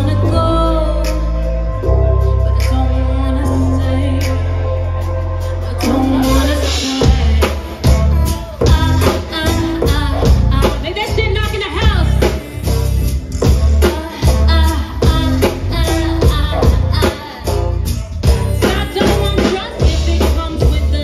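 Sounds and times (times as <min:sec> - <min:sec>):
person singing: 0:00.0 - 0:11.2, 0:11.8 - 0:21.0
heavy bass: 0:00.0 - 0:21.0
steady drum beat: 0:05.5 - 0:21.0.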